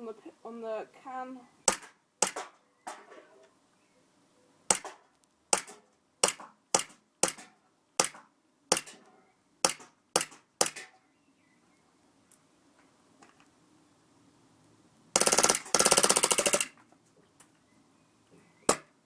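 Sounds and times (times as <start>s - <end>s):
pistol shots cracking: 1.7s - 2.6s.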